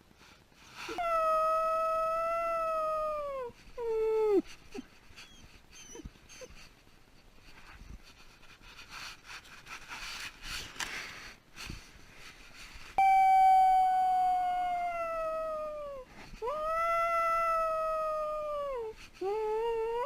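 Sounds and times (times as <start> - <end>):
puppy howling: 13.0 - 20.0.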